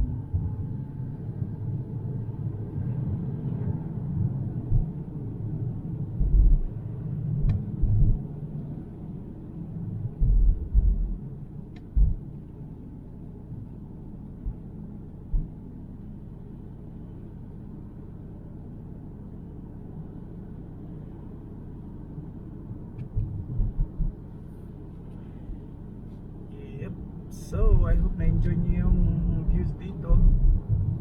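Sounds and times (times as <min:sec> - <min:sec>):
car cabin road rumble: 0:00.0 - 0:31.0
short low thumps: 0:06.2 - 0:06.7, 0:07.4 - 0:08.2, 0:10.2 - 0:11.2, 0:11.8 - 0:12.3, 0:15.3 - 0:15.5, 0:23.1 - 0:24.2, 0:27.6 - 0:31.0.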